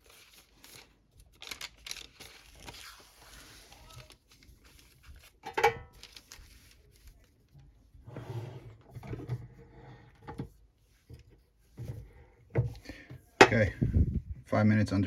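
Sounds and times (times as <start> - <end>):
paper rustling and crinkling: 0.0 - 8.1.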